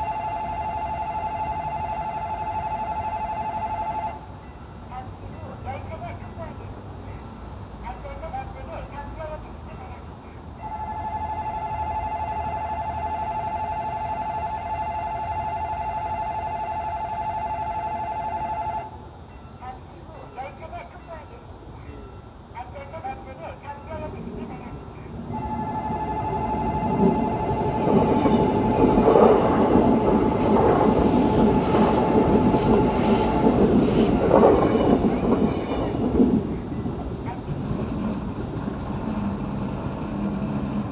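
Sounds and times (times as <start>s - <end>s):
level-crossing warning bell: 0.0s - 6.6s, 10.6s - 37.5s
train rumbling and clattering: 17.0s - 40.9s
high wheel squeals: 25.4s - 35.9s.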